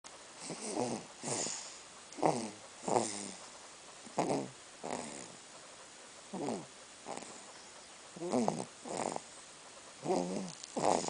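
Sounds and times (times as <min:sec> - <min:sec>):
baby snoring: 0:00.4 - 0:03.4, 0:04.1 - 0:05.4, 0:06.3 - 0:07.6, 0:08.2 - 0:09.4, 0:10.0 - 0:11.0.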